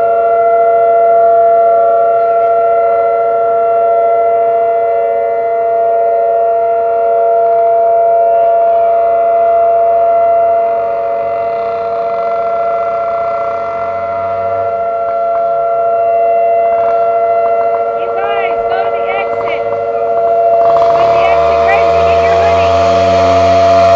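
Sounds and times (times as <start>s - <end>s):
outdoor warning sirens droning: 0.0s - 23.9s.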